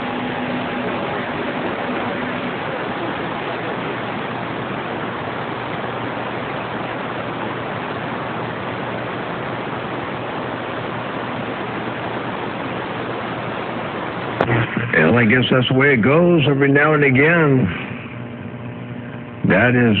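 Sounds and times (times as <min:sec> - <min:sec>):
radio static hiss: 0:00.0 - 0:20.0.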